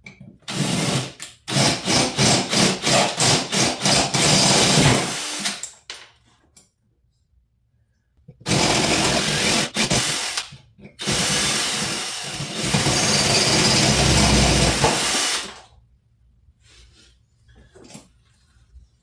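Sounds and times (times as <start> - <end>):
power drill drilling rivet: 8.5 - 15.6.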